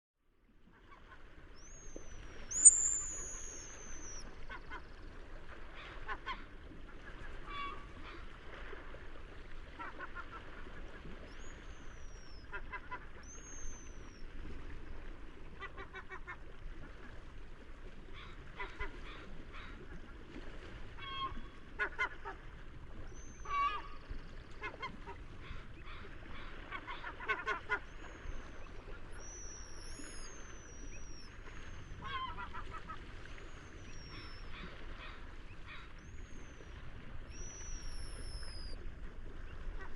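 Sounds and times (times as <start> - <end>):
seagulls calling: 2.5 - 4.8, 24.6 - 38.8
high thin whistling notes: 2.6 - 3.6.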